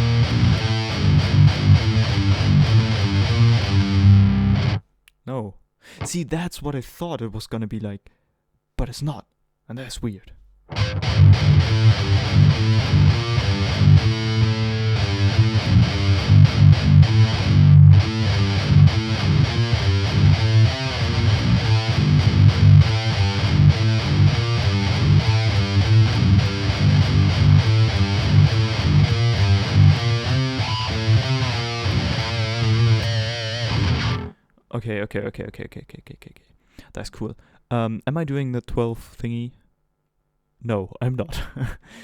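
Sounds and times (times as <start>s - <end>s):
distorted electric guitar riff: 0.0s - 4.8s, 10.7s - 34.4s.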